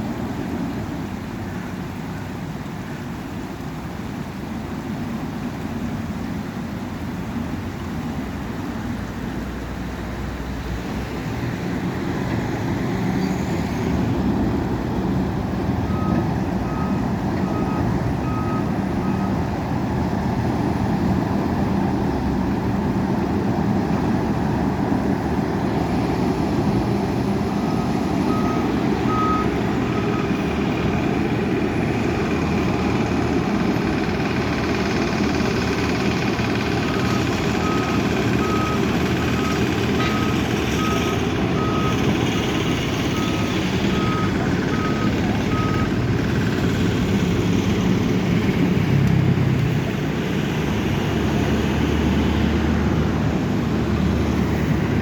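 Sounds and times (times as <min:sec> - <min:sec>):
heavy machine diesel engines: 0:00.0 - 0:55.0
reversing alarm beeping: 0:15.9 - 0:19.4, 0:27.4 - 0:30.6, 0:36.8 - 0:46.0.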